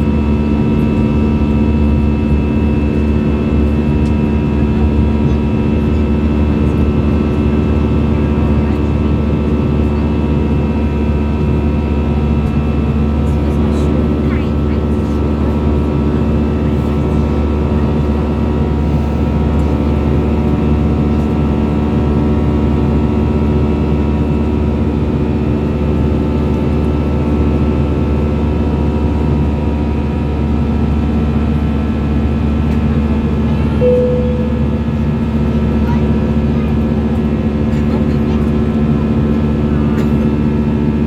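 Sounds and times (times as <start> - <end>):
aircraft engine drone in cabin: 0.0 - 41.0
short tone: 33.8 - 35.4.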